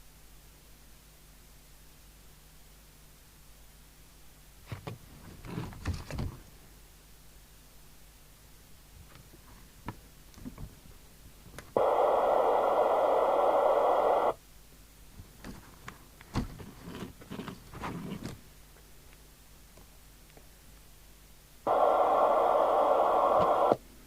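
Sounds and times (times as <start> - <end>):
radio receiver hiss burst: 11.8 - 14.4, 21.7 - 23.8.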